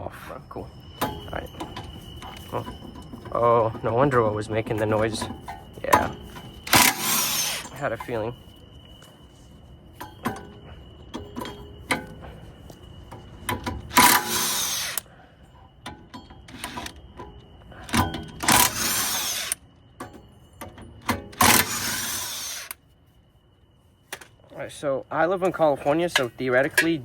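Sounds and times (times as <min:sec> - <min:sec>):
impact wrench running: 0:06.6 - 0:07.8, 0:13.9 - 0:15.0, 0:18.4 - 0:19.6, 0:21.4 - 0:22.8
light metal clicks and knocks: 0:10.0 - 0:12.2.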